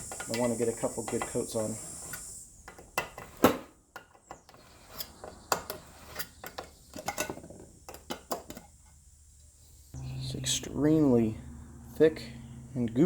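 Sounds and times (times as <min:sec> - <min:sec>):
paint containers clicking and knocking: 0:02.6 - 0:08.9.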